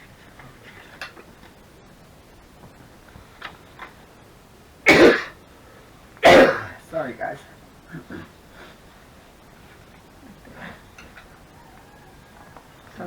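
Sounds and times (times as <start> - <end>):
person coughing: 4.9 - 5.3, 6.2 - 6.8.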